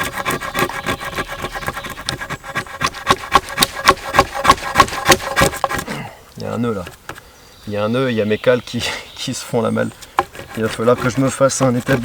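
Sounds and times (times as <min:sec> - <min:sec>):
drawknife scraping bark: 0:00.0 - 0:06.0, 0:10.0 - 0:12.0.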